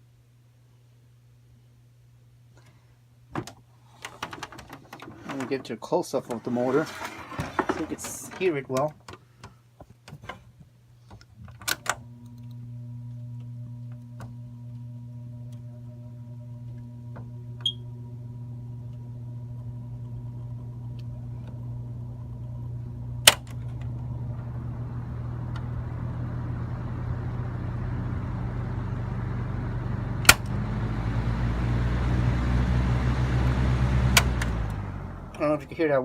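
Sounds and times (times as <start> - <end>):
box fan motor humming: 11.4 - 36.0.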